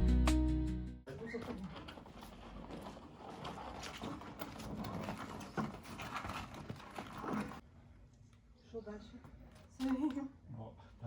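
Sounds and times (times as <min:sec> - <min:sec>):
handling knocks and clatter: 0:01.3 - 0:07.6.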